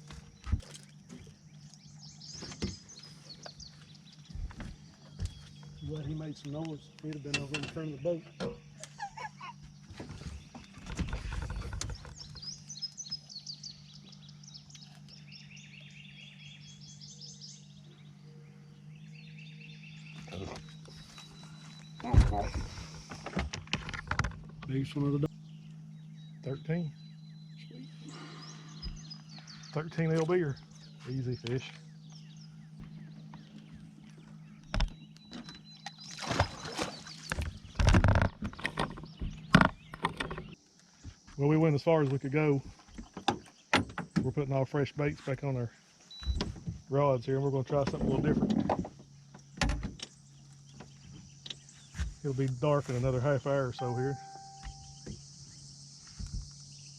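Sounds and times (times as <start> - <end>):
low hum: 0.0 - 40.6, 46.0 - 56.9
birds and insects chirping: 0.0 - 56.9
knocks and bumps on boat: 2.3 - 3.6, 4.3 - 6.0, 22.0 - 24.7, 33.7 - 41.3, 47.7 - 50.1.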